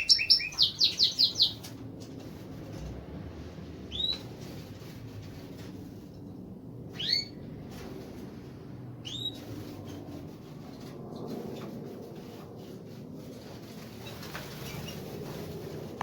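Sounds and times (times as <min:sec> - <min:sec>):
finch chirping: 0:00.0 - 0:01.7, 0:03.9 - 0:04.2, 0:07.0 - 0:07.3, 0:09.0 - 0:09.5
low background rumble: 0:00.0 - 0:16.0.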